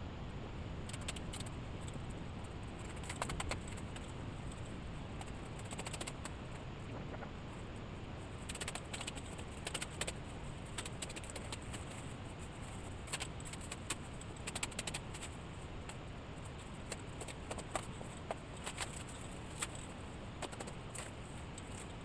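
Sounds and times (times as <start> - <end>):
low background noise: 0.0 - 22.0
light clicks and rattles: 8.4 - 22.0.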